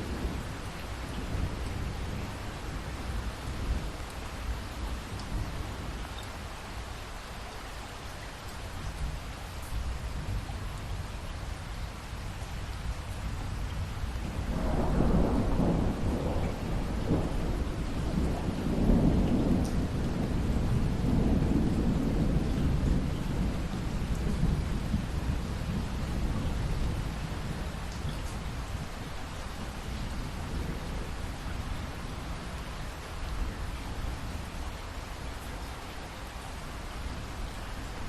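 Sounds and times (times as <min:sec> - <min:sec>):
steady rain: 0:00.0 - 0:38.0
thunder rolling: 0:14.5 - 0:27.0.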